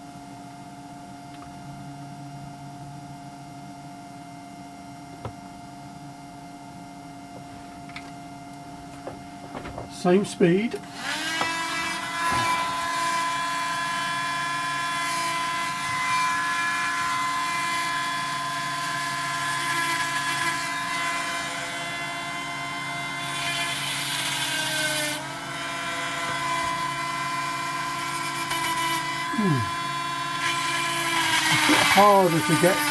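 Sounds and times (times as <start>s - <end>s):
rotary tool high whine: 8.9s - 32.9s
drill bit grinding hiss: 19.1s - 21.6s, 23.1s - 32.9s.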